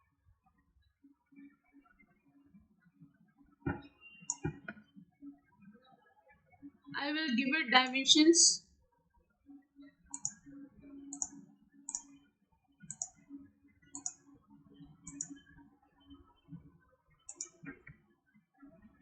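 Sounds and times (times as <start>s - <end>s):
computer mouse double clicks: 10.2s - 10.4s, 11.1s - 12.1s, 14.0s - 14.2s, 15.1s - 15.3s, 17.3s - 17.6s.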